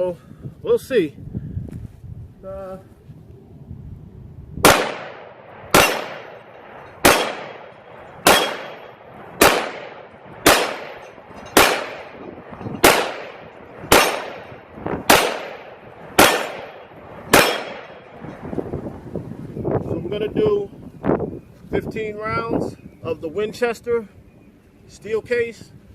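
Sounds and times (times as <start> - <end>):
pistol shots: 4.6 - 18.2.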